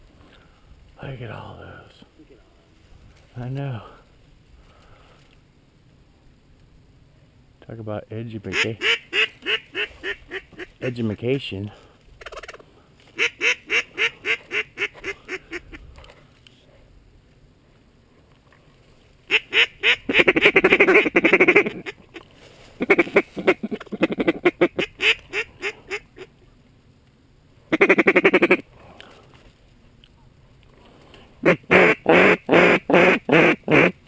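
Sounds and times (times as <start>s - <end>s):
duck call quacks and chatter: 8.5s - 10.8s, 13.2s - 15.8s, 19.3s - 22.2s, 22.8s - 26.3s, 27.7s - 28.6s, 31.4s - 34.0s.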